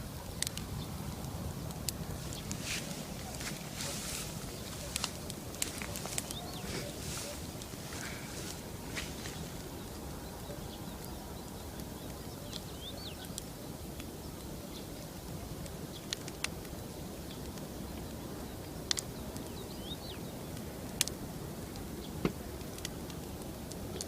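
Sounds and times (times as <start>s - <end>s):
campfire popping: 0.0s - 24.0s
low background noise: 0.0s - 24.0s
bird chirping: 2.2s - 14.9s.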